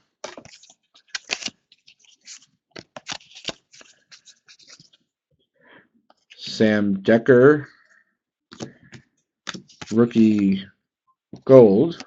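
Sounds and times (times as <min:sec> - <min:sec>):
trading cards sliding and flicking: 0:00.3 - 0:05.0, 0:09.5 - 0:10.5.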